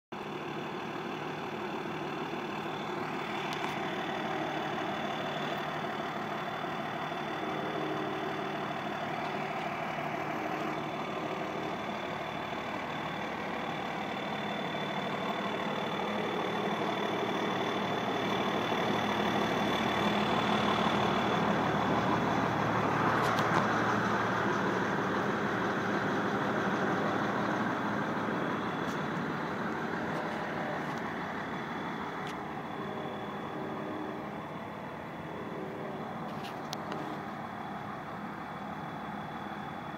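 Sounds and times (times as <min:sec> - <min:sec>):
diesel engine idling: 0:00.1 - 0:39.9.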